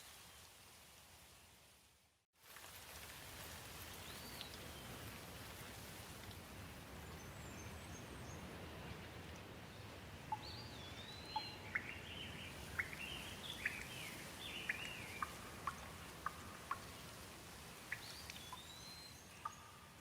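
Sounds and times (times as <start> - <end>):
faint rain hiss: 0.0 - 20.0
bird chirping: 10.3 - 16.8, 17.9 - 19.9.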